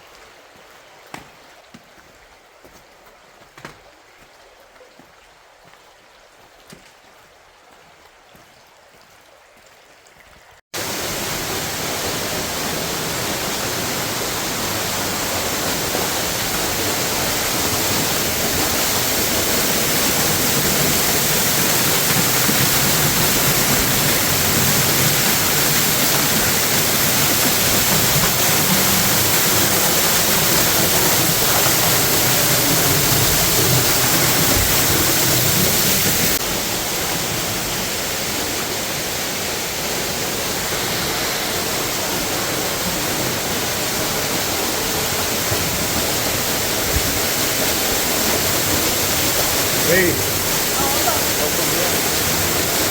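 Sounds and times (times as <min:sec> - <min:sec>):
waterfall rushing: 0:10.8 - 0:52.9.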